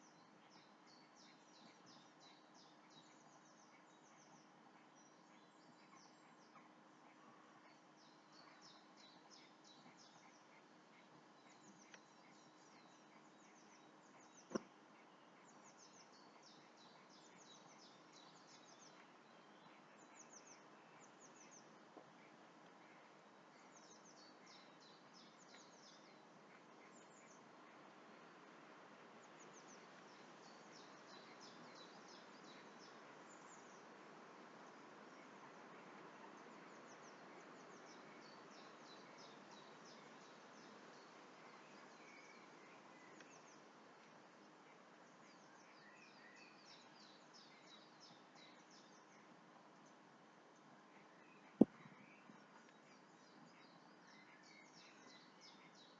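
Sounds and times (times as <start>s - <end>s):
small birds chirping: 0.0s - 55.9s
soft steady hiss: 0.0s - 55.9s.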